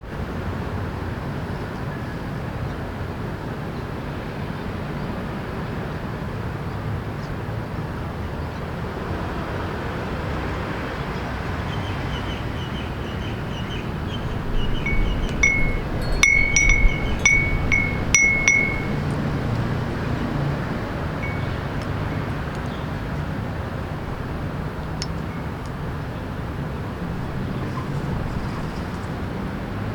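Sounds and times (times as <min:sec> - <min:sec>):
low hum of city traffic: 0:00.0 - 0:29.9
wind chime tinkling: 0:14.2 - 0:22.4.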